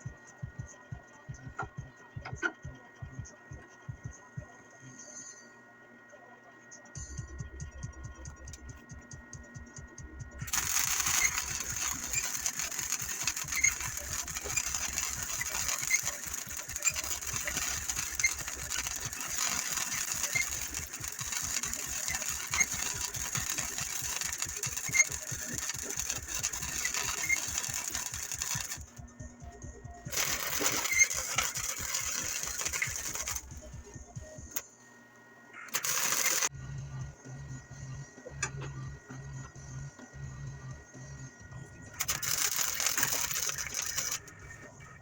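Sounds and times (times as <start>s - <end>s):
welding arc crackling hiss: 10.4s - 28.9s, 30.1s - 33.7s, 35.7s - 36.5s, 42.0s - 44.3s.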